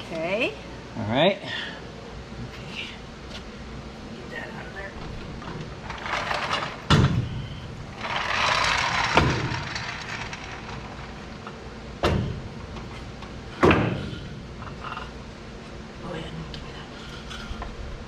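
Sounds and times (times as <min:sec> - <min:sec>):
rustling and scraping: 0:05.1 - 0:11.6.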